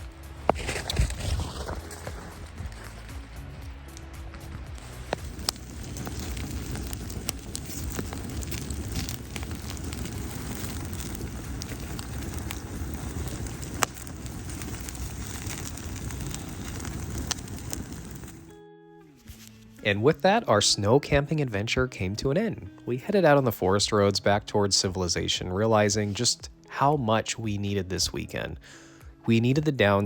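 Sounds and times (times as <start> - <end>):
campfire crackling and popping: 0.0 - 18.5.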